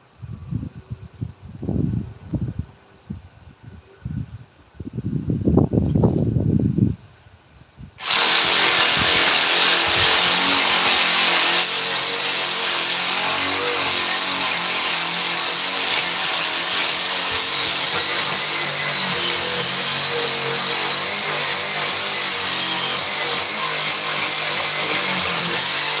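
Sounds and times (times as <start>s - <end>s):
power tool hissing whine: 8.0s - 26.0s.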